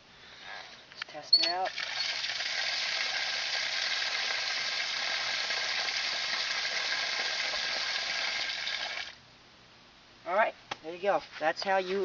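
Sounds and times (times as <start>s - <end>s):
water spraying from hose tap: 1.4s - 9.2s.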